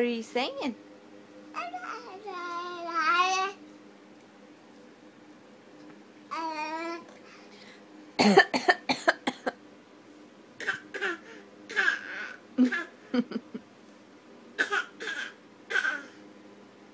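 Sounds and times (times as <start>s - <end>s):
baby voice sounds: 6.3s - 7.2s
baby coughing: 8.2s - 9.6s, 10.6s - 13.0s, 14.6s - 16.2s.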